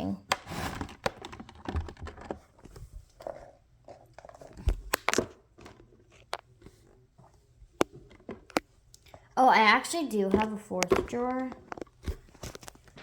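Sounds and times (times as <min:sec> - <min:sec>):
light rustling of toys: 0:00.0 - 0:13.0
small toys clicking and knocking: 0:10.3 - 0:13.0.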